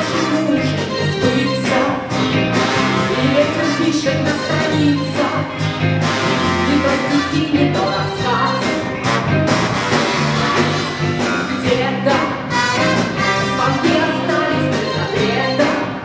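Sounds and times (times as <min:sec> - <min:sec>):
woman singing: 0:00.0 - 0:02.2, 0:02.9 - 0:05.6, 0:06.6 - 0:09.0, 0:11.4 - 0:16.0
big band playing jazz-pop: 0:00.0 - 0:16.0
brass: 0:00.0 - 0:16.0
steady drum beat: 0:00.0 - 0:16.0.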